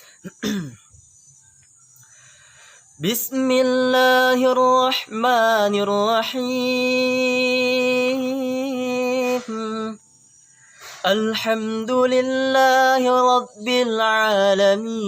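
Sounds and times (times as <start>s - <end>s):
man chanting melodically: 3.0s - 10.0s, 10.9s - 15.0s.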